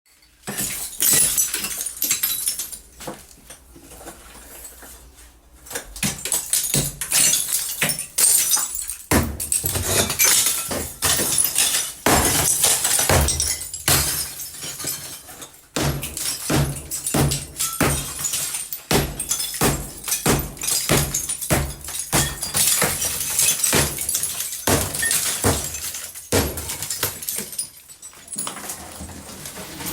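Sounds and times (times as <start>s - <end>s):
debris crumbling and falling: 0.1s - 29.9s
hammer smashing into wall: 6.0s - 15.1s, 15.8s - 27.6s.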